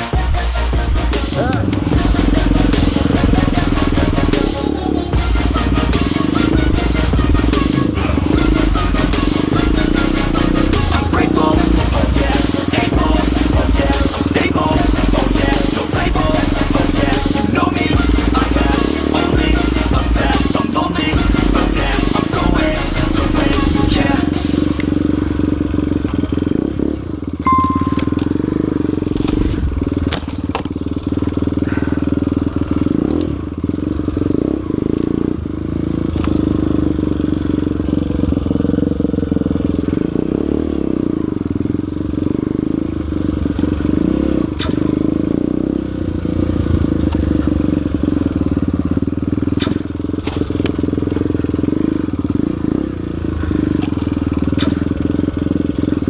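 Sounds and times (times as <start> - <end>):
motorcycle engine running: 0.0 - 22.6, 23.6 - 56.0
bike knocking and clattering: 44.6 - 45.2, 46.8 - 51.9, 53.2 - 56.0.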